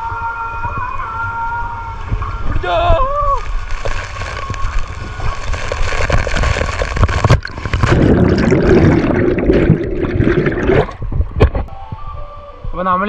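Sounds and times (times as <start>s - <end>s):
water rushing and splashing: 3.4s - 11.6s.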